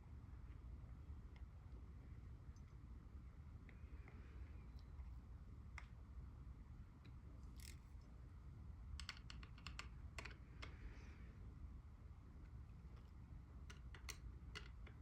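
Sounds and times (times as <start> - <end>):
low room rumble: 0.0 - 15.0
clicks and taps of small parts: 9.0 - 10.8, 13.6 - 15.0.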